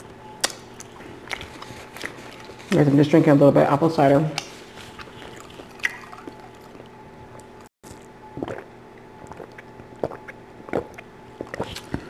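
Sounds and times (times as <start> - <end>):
faint steady hum: 0.0 - 12.0
wet gulps and clicks: 0.4 - 2.7, 4.4 - 12.0
sipping and swallowing: 4.6 - 12.0.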